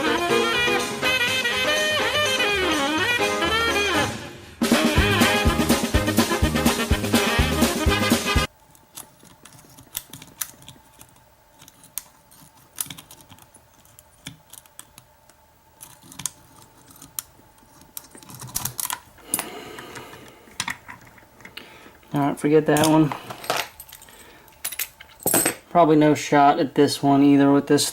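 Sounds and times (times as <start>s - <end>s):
music: 0.0s - 8.5s
lock pick scraping and clicking: 8.5s - 15.1s, 15.8s - 25.3s.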